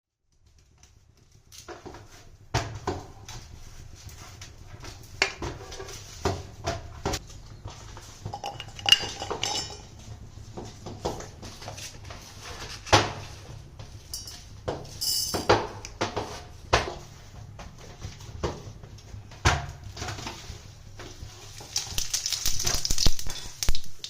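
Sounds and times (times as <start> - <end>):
metal utensils clinking: 8.3 - 10.0, 14.1 - 15.6.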